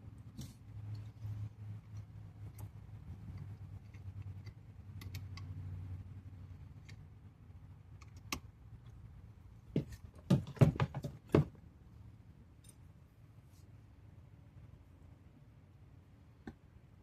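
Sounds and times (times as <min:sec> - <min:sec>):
tools and parts clicking: 0:08.0 - 0:09.0, 0:12.6 - 0:12.9
sharp knocks: 0:09.7 - 0:11.6.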